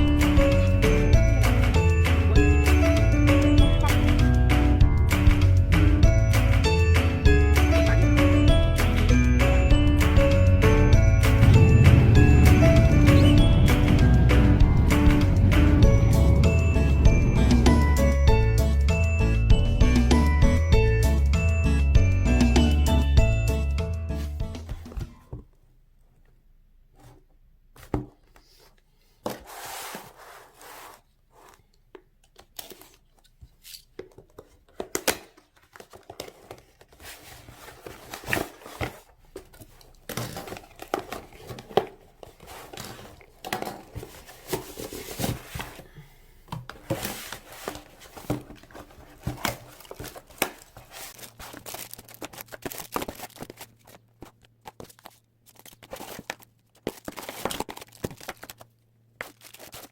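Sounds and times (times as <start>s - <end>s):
packaging tearing and crinkling: 47.1s - 59.9s.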